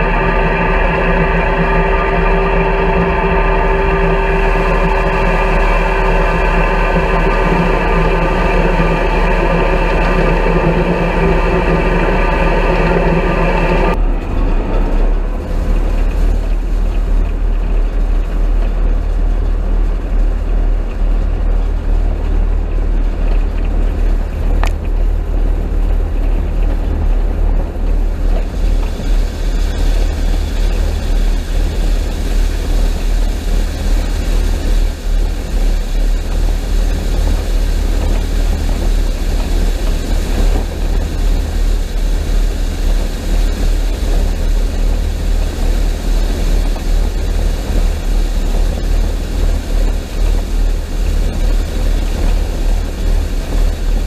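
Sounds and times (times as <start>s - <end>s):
combine harvester rumbling: 0.0s - 54.0s.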